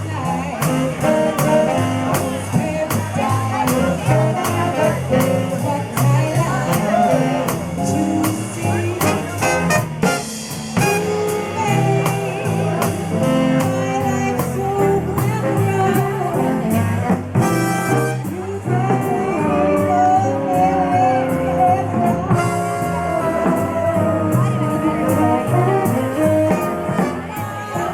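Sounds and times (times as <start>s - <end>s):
person singing: 0.0s - 9.7s, 10.8s - 27.9s
jazz band playing: 0.0s - 27.9s.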